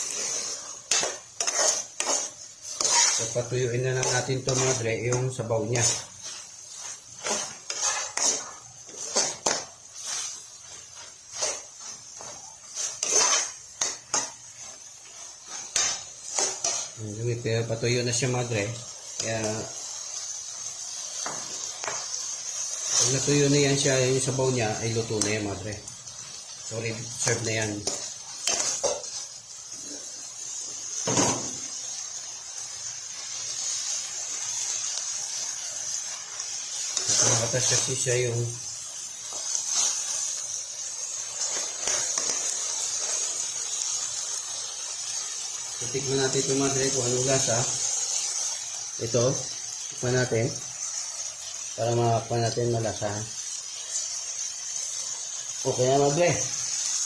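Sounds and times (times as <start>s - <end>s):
utensil scraping and knocking pot: 0.0s - 6.1s, 6.8s - 10.4s, 11.3s - 14.4s
pan sizzling: 0.0s - 57.0s.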